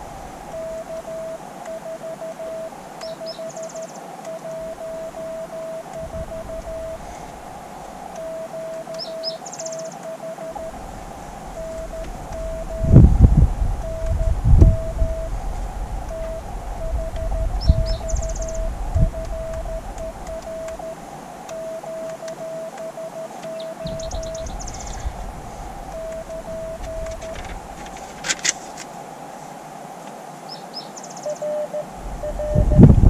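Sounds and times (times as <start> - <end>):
morse code tone: 0.0 - 15.4, 16.0 - 27.6, 31.2 - 33.0
lower-pitched morse signal: 0.0 - 28.0, 31.2 - 33.0
receiver hiss: 0.0 - 33.0.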